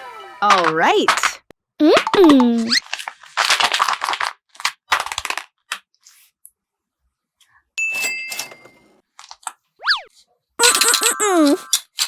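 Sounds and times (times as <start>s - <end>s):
paper crinkling and rustling: 0.4s - 1.4s, 2.6s - 6.4s, 9.2s - 9.5s.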